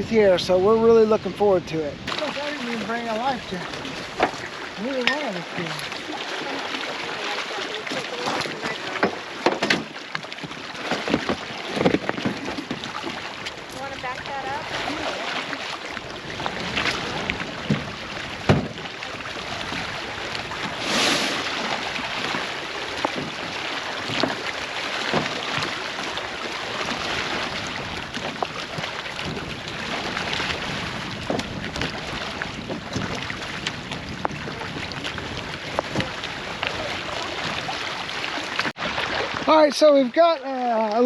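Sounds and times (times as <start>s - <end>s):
wind on microphone: 0.0s - 24.5s, 25.1s - 39.5s
water washing along shore: 0.0s - 41.0s
knocks and clunks: 8.2s - 13.1s, 17.6s - 18.8s.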